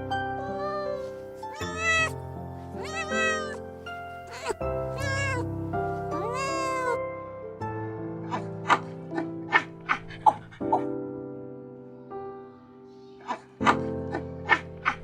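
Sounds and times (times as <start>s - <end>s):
cat meowing: 0.4s - 2.2s, 2.8s - 3.6s, 4.2s - 7.0s.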